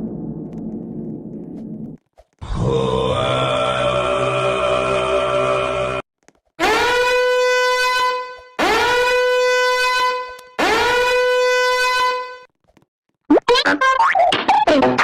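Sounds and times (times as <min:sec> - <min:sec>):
horn-like blast rising in pitch: 0:06.6 - 0:12.4.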